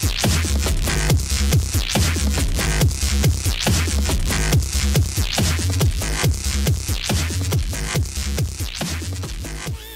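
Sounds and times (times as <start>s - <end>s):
electronic dance music: 0.0s - 9.9s
pitch-dropping kick drum: 0.0s - 9.9s.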